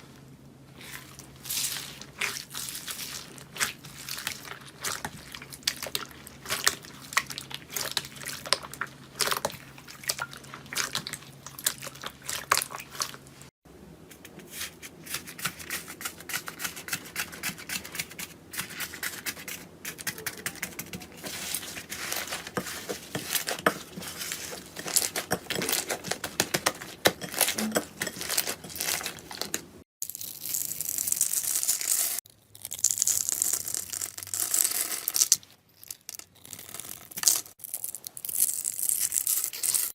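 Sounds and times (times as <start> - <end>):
slime crackling and popping: 30.0 - 39.9.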